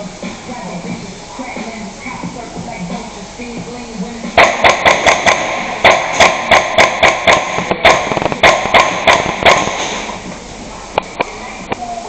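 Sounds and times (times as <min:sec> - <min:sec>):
airsoft rifle shots: 0:04.4 - 0:10.3.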